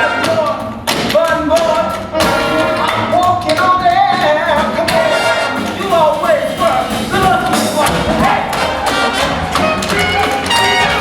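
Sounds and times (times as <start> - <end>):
jazz band music: 0.0 - 11.0.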